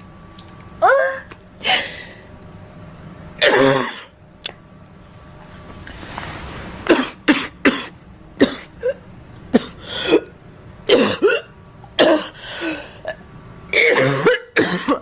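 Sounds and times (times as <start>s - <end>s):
girl coughing: 3.4s - 4.2s, 6.9s - 10.3s, 10.9s - 15.0s.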